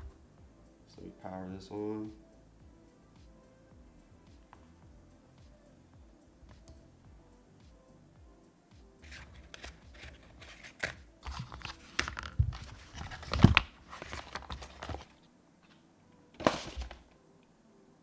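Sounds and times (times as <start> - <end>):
packaging crinkling and tearing: 9.1 - 15.2, 16.4 - 17.0.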